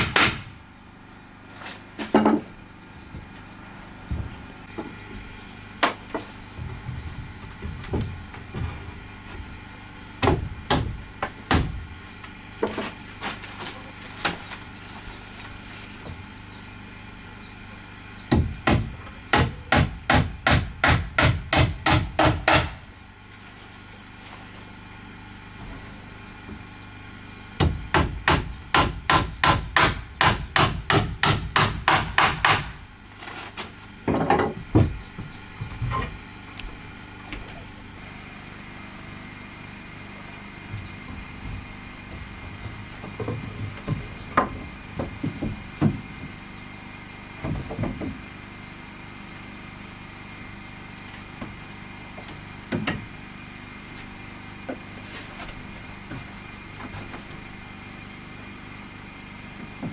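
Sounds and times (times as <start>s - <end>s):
hammer striking wood: 0.0s - 0.5s, 10.2s - 11.8s, 18.3s - 22.8s, 27.6s - 32.8s.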